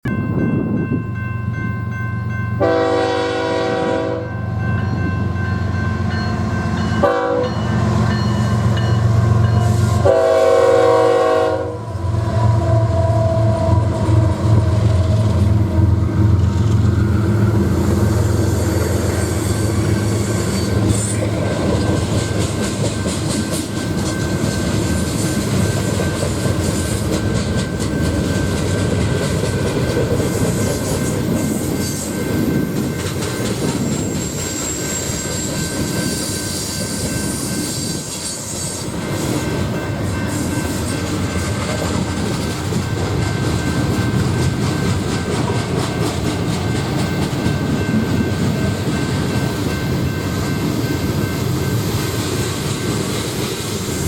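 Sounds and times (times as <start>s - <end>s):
locomotive horn: 2.6s - 4.6s, 7.0s - 7.7s, 9.3s - 16.0s.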